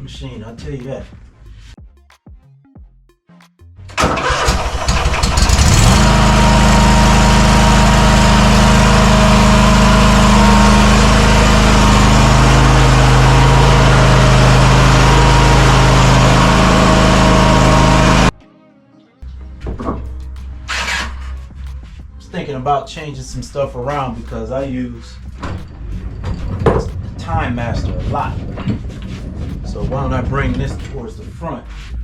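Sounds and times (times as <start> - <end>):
small petrol engine running: 4.0 - 18.4, 20.7 - 21.4.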